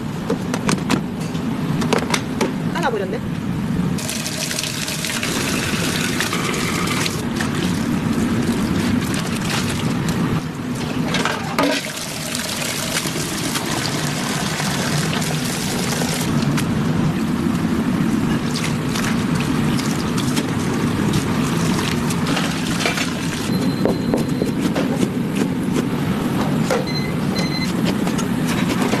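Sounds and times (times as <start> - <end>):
water running from a tap into a sink: 4.0 - 7.2, 11.7 - 16.3.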